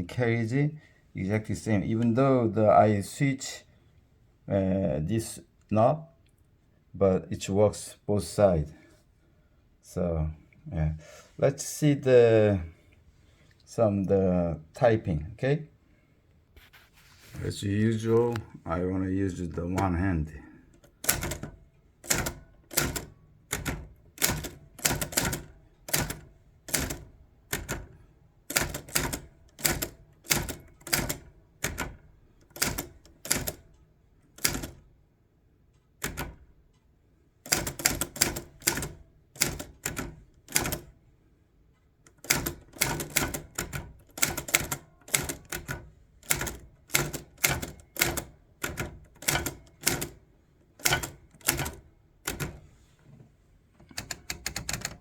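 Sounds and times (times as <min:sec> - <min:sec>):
typewriter key strikes: 0:20.9 - 0:33.6, 0:34.4 - 0:34.8, 0:36.0 - 0:36.4, 0:37.5 - 0:40.9, 0:42.1 - 0:50.2, 0:50.8 - 0:52.6, 0:53.9 - 0:55.0.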